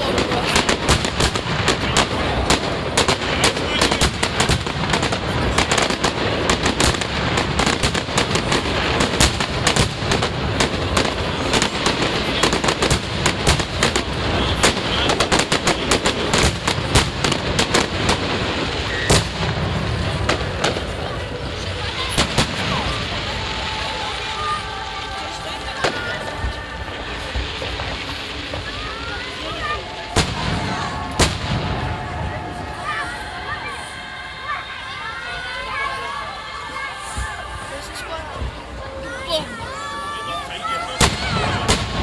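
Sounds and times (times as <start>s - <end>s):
fireworks bangs and cracks: 0.0s - 35.0s, 37.0s - 42.0s
fireworks crackling rumble: 0.0s - 42.0s.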